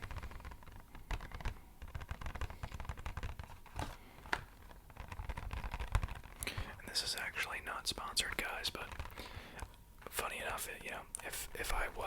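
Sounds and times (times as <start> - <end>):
rapid tapping on empty box: 0.0 - 7.2, 8.1 - 10.2.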